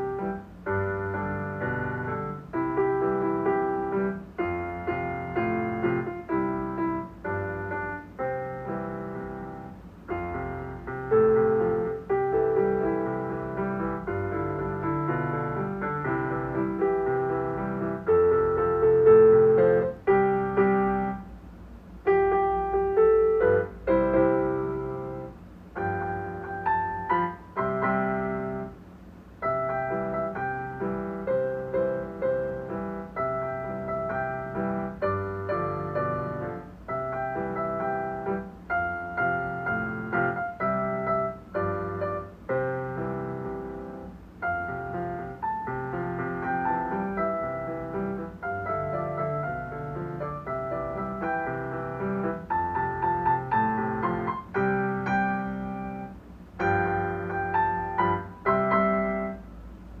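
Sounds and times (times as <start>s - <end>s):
solo piano children's song: 0.0s - 60.0s.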